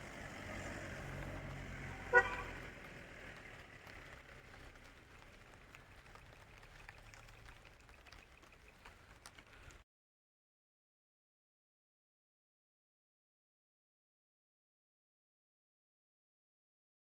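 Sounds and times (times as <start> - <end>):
low engine rumble: 0.0 - 9.8
vehicle horn toot: 2.0 - 2.6.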